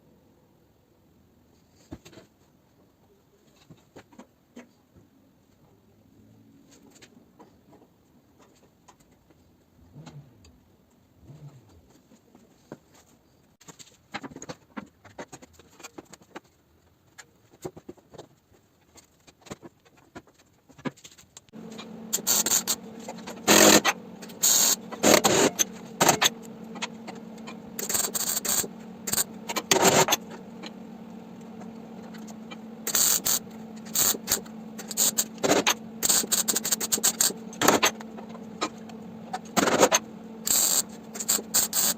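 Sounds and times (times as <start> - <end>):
welder machine hum: 21.5 - 41.9
welding crackling hiss bursts: 21.7 - 26.9, 27.8 - 30.1, 32.8 - 37.4, 40.4 - 41.9.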